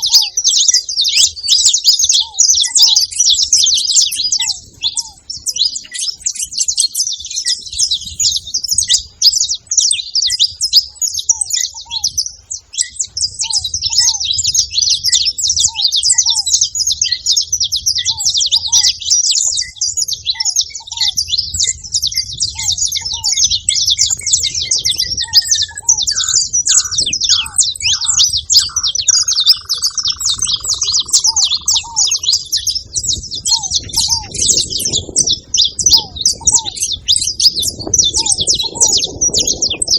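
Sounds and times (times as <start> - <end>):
finches chirping: 0.0 - 39.9
lower bird call: 12.8 - 39.9.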